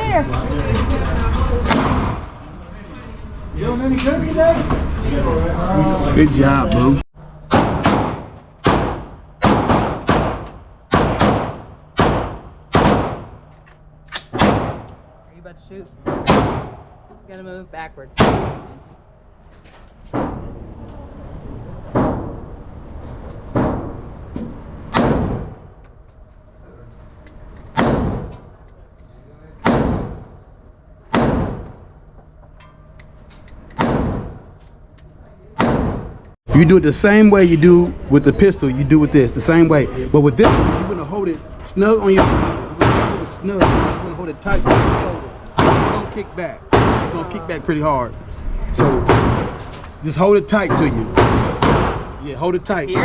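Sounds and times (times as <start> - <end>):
pistol shots ringing indoors: 7.5 - 15.0, 16.2 - 16.9, 42.2 - 47.2, 51.1 - 52.2.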